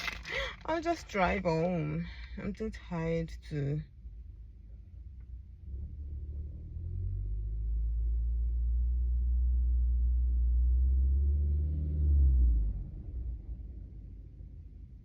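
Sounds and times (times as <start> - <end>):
car engine running: 0.0 - 10.8.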